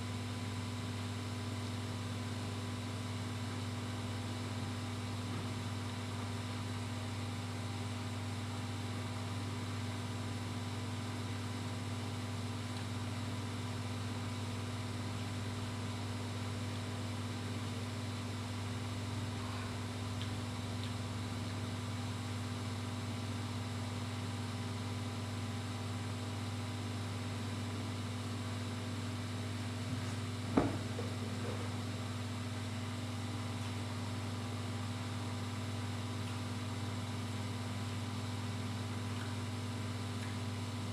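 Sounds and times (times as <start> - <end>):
steady low hum: 1.3 - 40.9.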